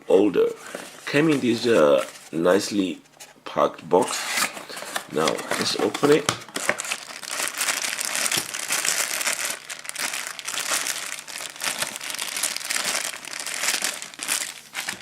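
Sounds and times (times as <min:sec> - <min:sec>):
packaging crinkling and rustling: 0:04.4 - 0:15.0.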